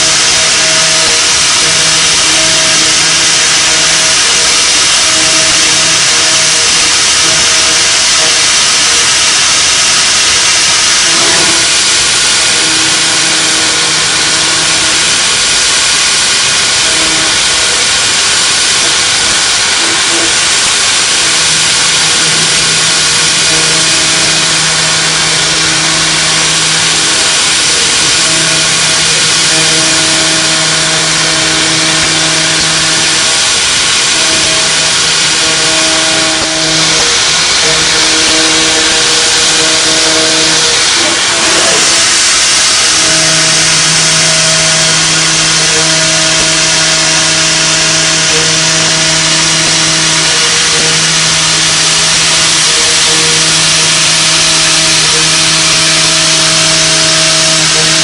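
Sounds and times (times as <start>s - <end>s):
milling machine hiss: 0.0s - 58.0s.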